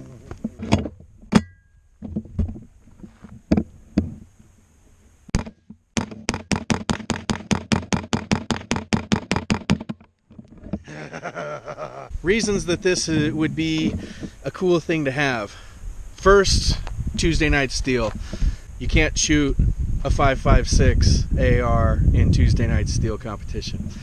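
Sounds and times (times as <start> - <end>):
metallic ring: 1.3 - 2.0.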